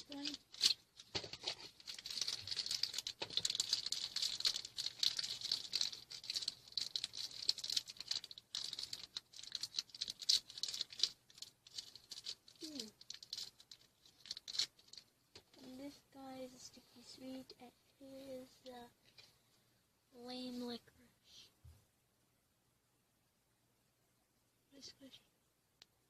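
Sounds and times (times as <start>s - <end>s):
plastic packaging crinkling: 0.0s - 15.8s
small clicks and rattles: 0.0s - 15.8s.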